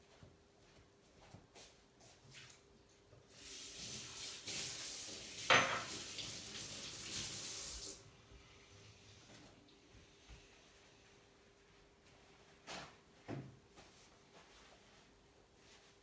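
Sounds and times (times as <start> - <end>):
tap water running into sink: 3.3 - 8.0.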